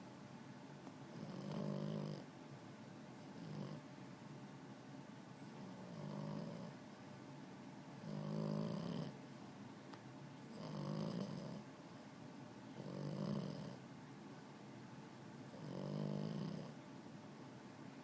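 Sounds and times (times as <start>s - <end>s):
puppy snoring: 1.1s - 2.3s, 3.2s - 3.9s, 5.4s - 6.8s, 7.9s - 9.2s, 10.5s - 11.7s, 12.7s - 13.8s, 15.4s - 16.8s.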